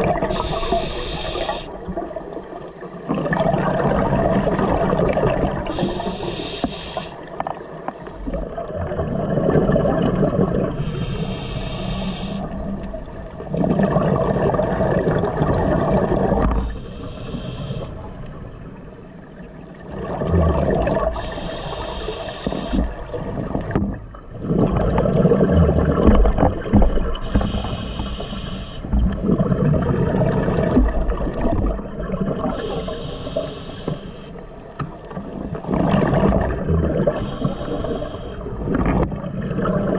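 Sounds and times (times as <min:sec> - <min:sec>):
exhaled bubbles gushing: 0:00.0 - 0:06.3, 0:07.2 - 0:11.2, 0:11.9 - 0:17.1, 0:19.4 - 0:28.2, 0:28.8 - 0:33.4, 0:35.1 - 0:39.9
regulator inhalation hiss: 0:00.2 - 0:01.8, 0:05.7 - 0:07.3, 0:10.7 - 0:12.7, 0:16.6 - 0:18.1, 0:21.2 - 0:23.0, 0:27.2 - 0:29.0, 0:32.5 - 0:34.7, 0:37.1 - 0:38.5.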